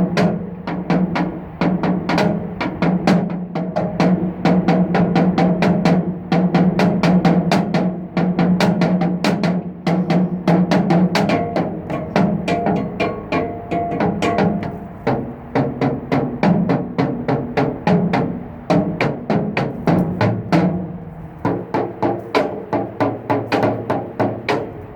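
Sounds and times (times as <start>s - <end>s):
sticks drumming on metal: 9.3s - 20.8s
metal ringing: 11.3s - 15.0s.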